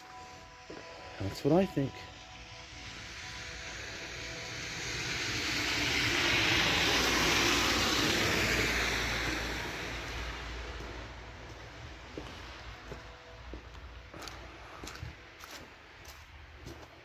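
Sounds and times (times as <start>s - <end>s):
rushing rumble from the sky: 3.2s - 15.4s.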